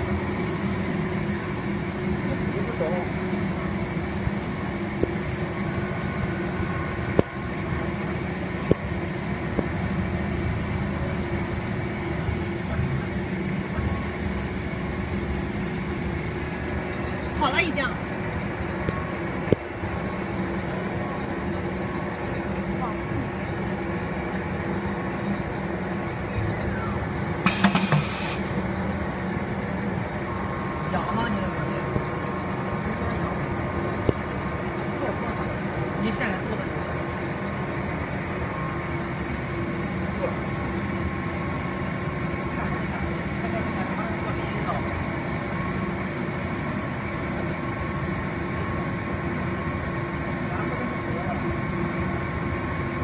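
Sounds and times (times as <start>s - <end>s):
workshop machinery humming: 0.0s - 53.0s
sharp clicks and knocks: 27.5s - 28.4s
router machine humming: 27.5s - 28.5s.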